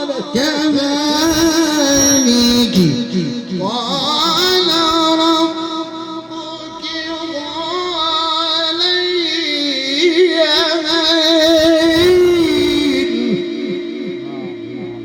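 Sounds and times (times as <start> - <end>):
man chanting recitation: 0.0 - 15.0.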